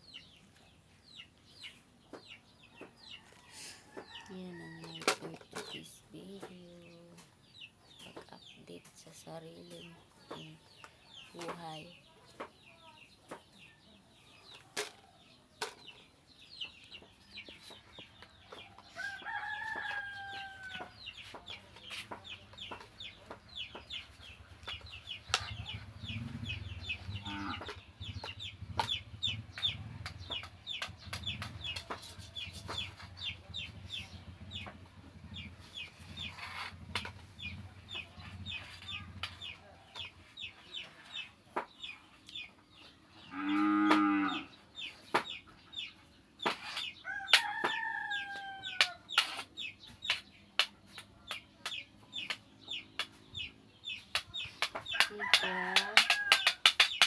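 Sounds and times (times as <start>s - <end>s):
chicks peeping: 0.0s - 57.0s
rooster crowing: 18.9s - 20.9s, 47.0s - 49.1s, 55.0s - 56.6s.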